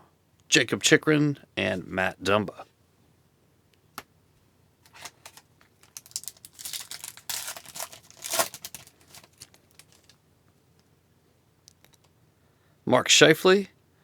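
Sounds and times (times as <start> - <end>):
foil wrapper tearing and crinkling: 4.9 - 10.2.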